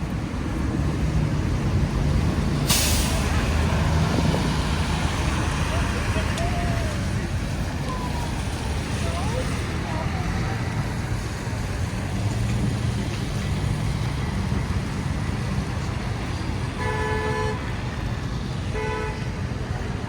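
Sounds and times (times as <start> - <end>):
street traffic rumbling: 0.0 - 20.0
car horn honking: 16.7 - 17.7, 18.7 - 19.3.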